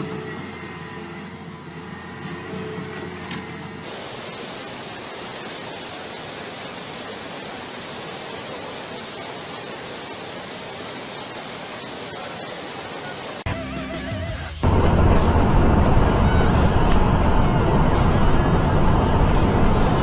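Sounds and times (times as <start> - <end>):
static hiss: 3.8 - 13.5.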